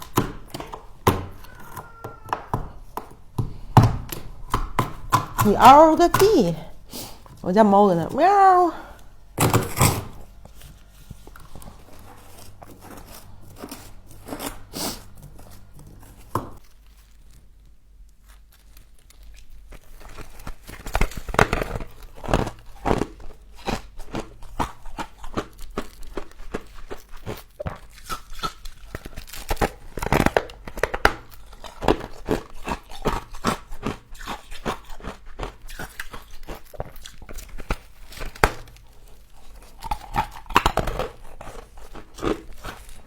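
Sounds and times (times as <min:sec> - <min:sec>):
frost crunching as chewed: 0:10.2 - 0:43.0.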